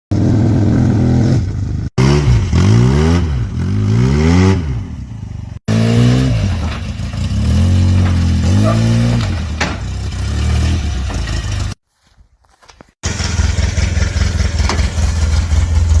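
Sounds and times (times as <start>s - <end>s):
vehicle engine revving: 0.1s - 11.8s, 13.0s - 16.0s.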